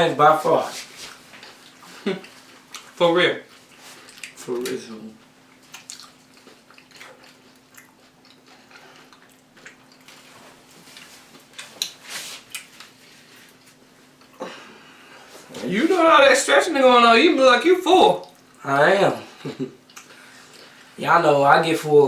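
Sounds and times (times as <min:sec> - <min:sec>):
faint steady hum: 0:00.0 - 0:22.0
chewing with small crunches: 0:01.1 - 0:14.4, 0:18.1 - 0:18.6, 0:19.8 - 0:20.8.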